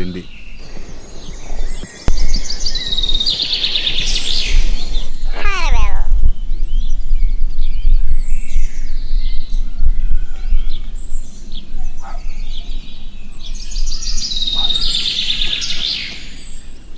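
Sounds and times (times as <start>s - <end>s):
birds chirping and whistling: 0.0s - 16.9s
trilling birdsong: 0.0s - 16.9s
low rumble: 0.6s - 14.0s.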